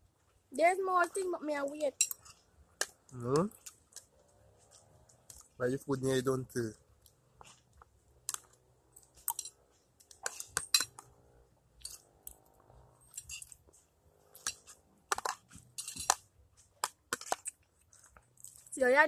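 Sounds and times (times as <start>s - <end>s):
cutlery clinking on plate: 14.4s - 16.2s
person chewing: 16.8s - 18.7s.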